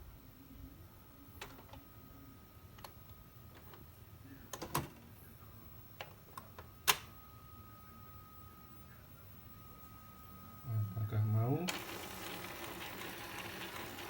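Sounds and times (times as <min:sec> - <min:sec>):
faint high hum: 0:00.0 - 0:14.0.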